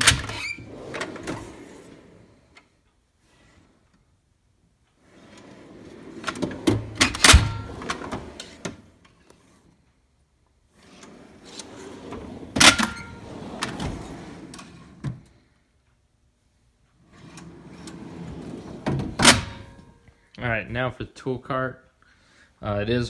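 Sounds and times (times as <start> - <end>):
metal drawers rolling on slides: 0.0 - 3.9, 5.0 - 9.6, 10.7 - 15.3, 17.0 - 20.0
metal drawer shutting clack: 6.2 - 8.8, 11.5 - 15.2, 17.4 - 19.9.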